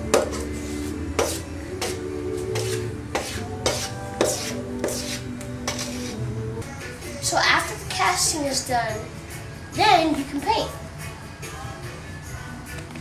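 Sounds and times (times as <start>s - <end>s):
background music sustained notes: 0.0s - 13.0s
regular rasping scrapes: 0.1s - 6.3s.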